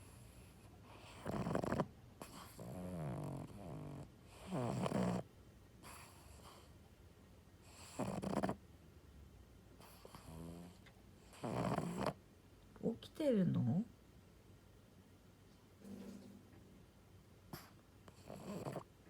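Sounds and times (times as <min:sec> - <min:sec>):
dog snoring: 0:00.0 - 0:06.7, 0:07.6 - 0:08.6, 0:09.8 - 0:12.2, 0:17.5 - 0:18.9.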